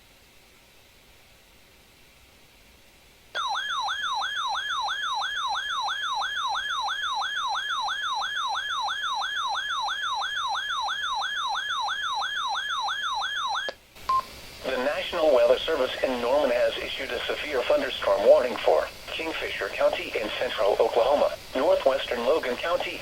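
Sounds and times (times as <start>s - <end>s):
faint hiss: 0.0s - 3.4s, 13.8s - 23.0s
radio alarm siren: 3.4s - 13.8s.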